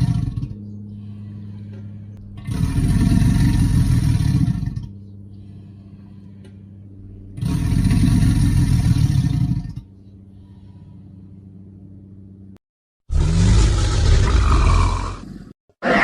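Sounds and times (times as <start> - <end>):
alligator bellowing: 0.0 - 1.6, 2.4 - 5.6, 7.4 - 9.9, 13.1 - 16.0.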